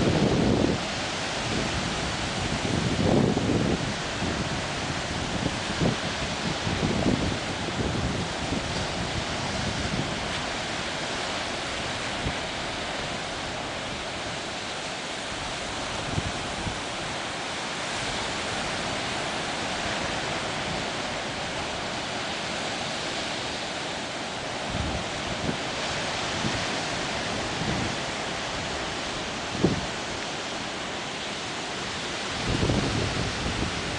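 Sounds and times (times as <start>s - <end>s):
surf washing on shore: 0.0s - 33.9s.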